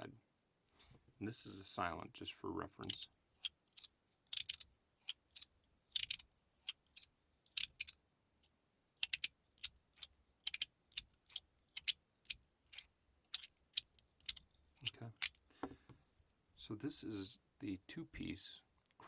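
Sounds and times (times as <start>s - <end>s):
slider fidget clicking: 2.8s - 8.0s, 9.0s - 15.4s.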